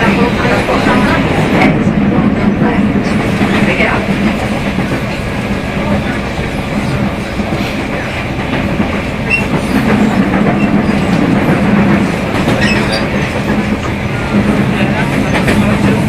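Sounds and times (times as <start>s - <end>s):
train wheel-on-rail noise: 0.0s - 16.0s.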